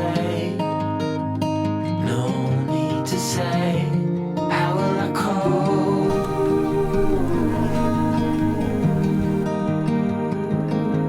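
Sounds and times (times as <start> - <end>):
soft instrumental music: 5.4 - 11.0
plucked guitar-like notes: 6.1 - 11.0.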